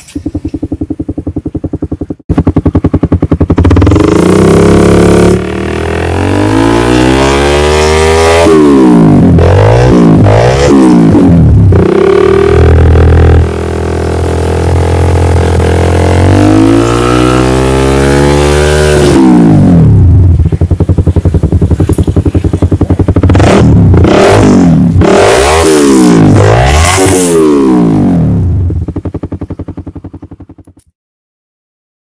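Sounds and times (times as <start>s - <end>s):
motorcycle engine revving: 0.0s - 30.9s.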